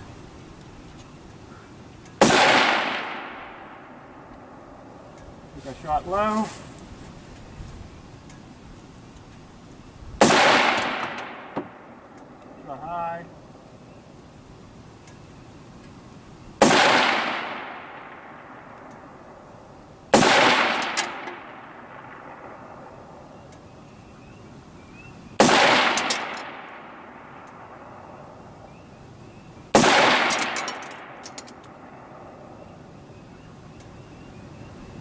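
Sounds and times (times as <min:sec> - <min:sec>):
rifle shots: 0:02.2 - 0:04.7, 0:10.2 - 0:12.2, 0:16.6 - 0:19.2, 0:20.1 - 0:23.2, 0:25.4 - 0:27.9, 0:29.7 - 0:32.3.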